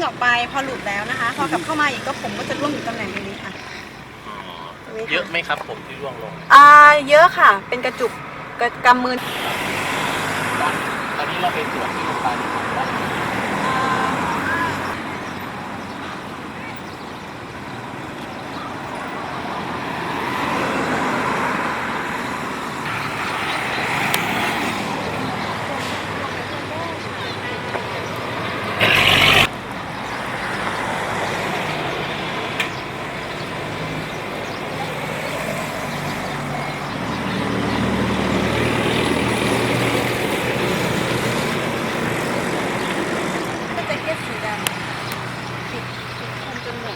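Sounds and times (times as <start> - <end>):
motor vehicle passing: 0.0 - 46.9
traffic noise: 0.0 - 46.9
vehicle engine running: 24.8 - 30.9.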